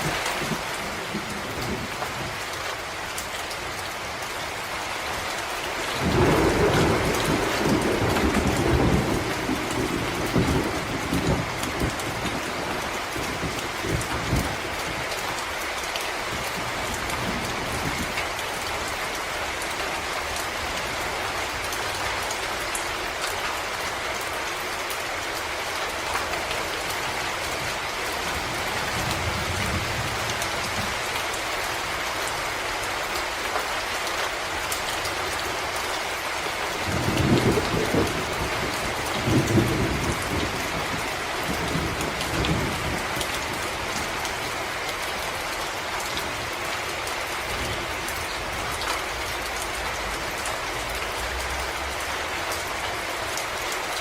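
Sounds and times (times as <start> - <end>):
rain pattering on leaves: 0.0 - 54.0
distant thunder rumbling: 5.9 - 15.1, 36.8 - 44.8.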